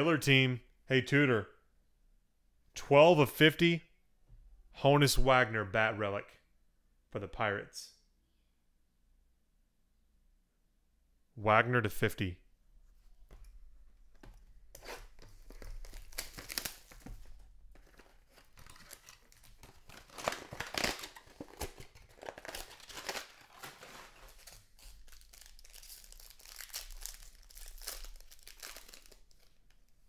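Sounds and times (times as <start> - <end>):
wrapper tearing and crinkling: 14.8 - 29.9.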